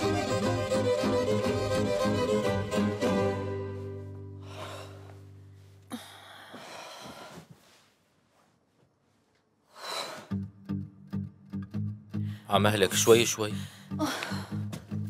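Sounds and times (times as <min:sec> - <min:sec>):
strummed guitar music: 0:00.0 - 0:04.4, 0:10.4 - 0:13.9
bowed-string music: 0:00.0 - 0:05.7
soft breaths: 0:03.8 - 0:10.4.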